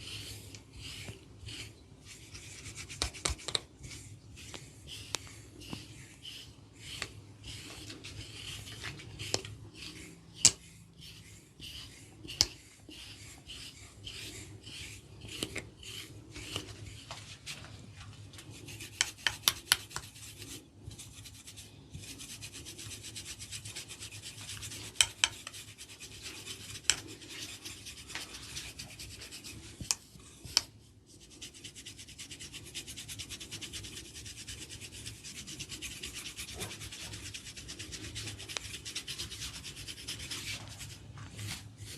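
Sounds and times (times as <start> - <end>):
hands rubbing scalp: 0.0 - 41.9.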